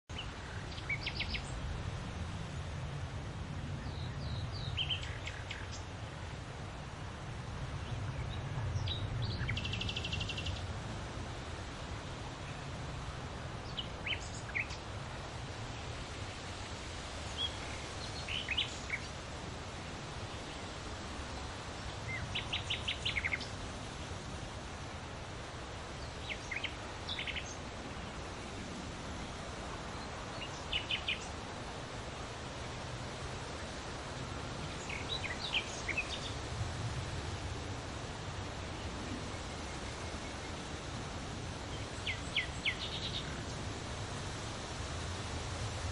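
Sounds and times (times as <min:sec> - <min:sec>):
wind rustling foliage: 0:00.0 - 0:45.9
birds chirping: 0:00.1 - 0:01.6, 0:16.7 - 0:20.8, 0:21.8 - 0:24.2, 0:25.7 - 0:31.4, 0:34.6 - 0:36.5, 0:41.6 - 0:43.8.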